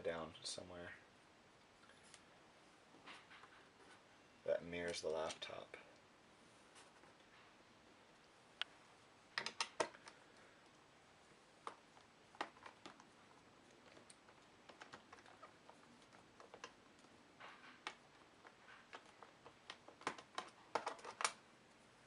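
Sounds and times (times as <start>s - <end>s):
small hard parts clicking on desk: 9.4s - 10.2s, 13.7s - 21.4s.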